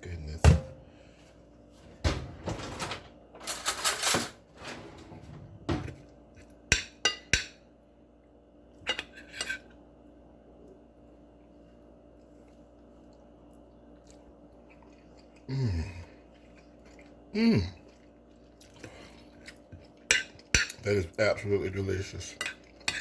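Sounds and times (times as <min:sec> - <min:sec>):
cutlery scraping on a plate: 0:08.9 - 0:09.7, 0:20.1 - 0:20.8, 0:22.3 - 0:23.0.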